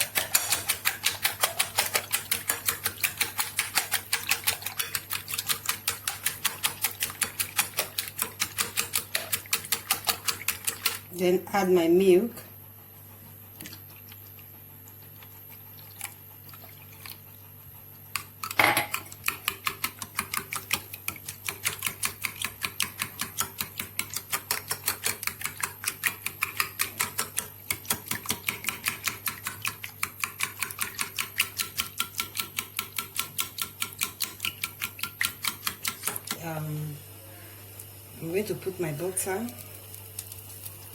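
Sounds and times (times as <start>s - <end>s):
whisk clicking against bowl: 0.0s - 11.2s, 18.1s - 36.5s.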